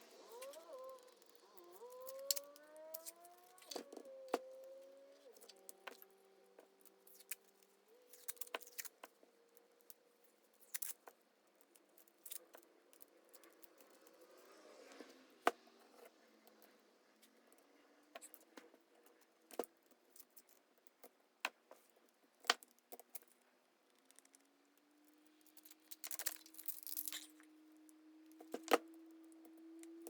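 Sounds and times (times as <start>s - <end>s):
squeaky rising tones: 0.0s - 5.7s.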